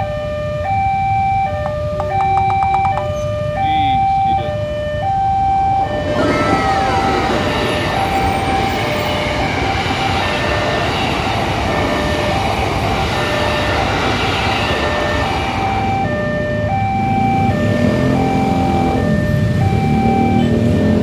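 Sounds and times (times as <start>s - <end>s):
level crossing two-note alarm: 0.0s - 9.8s, 15.8s - 21.0s
train wheels rumbling on rails: 1.5s - 21.0s.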